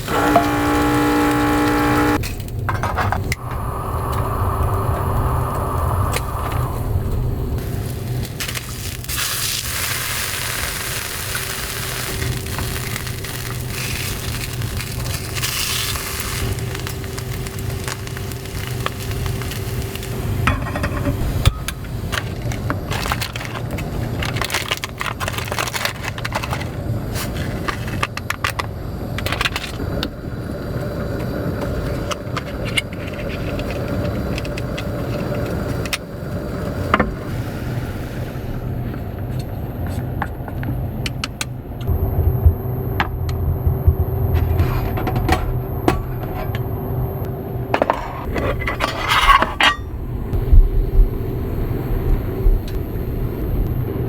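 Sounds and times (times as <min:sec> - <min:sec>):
strong wind rumble against car: 0:03.1 - 0:07.7.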